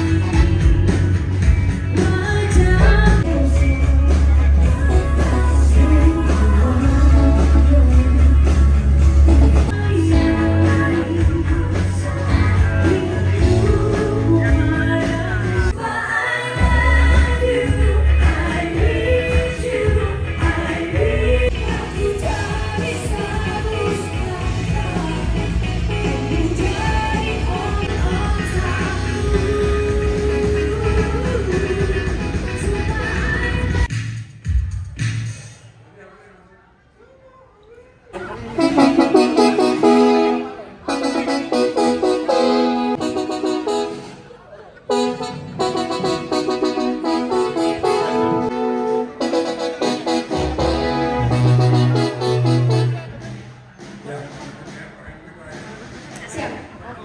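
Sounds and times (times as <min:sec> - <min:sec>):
rock band playing: 0:00.0 - 0:15.8, 0:16.6 - 0:33.9, 0:38.2 - 0:54.8
person singing: 0:01.9 - 0:33.9.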